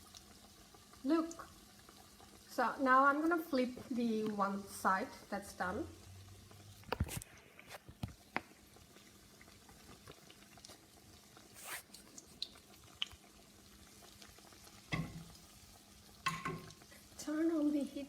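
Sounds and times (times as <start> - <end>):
patties sizzling in oil: 0.0 - 18.0
spatula tapping pan: 14.9 - 15.3, 16.2 - 16.7.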